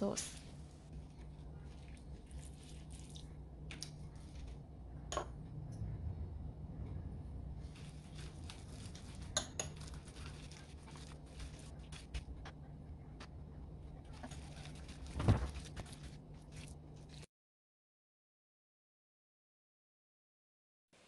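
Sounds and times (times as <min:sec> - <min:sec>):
steady low hum: 0:00.0 - 0:17.3
wet squishing of meat: 0:01.1 - 0:04.0, 0:07.7 - 0:12.2.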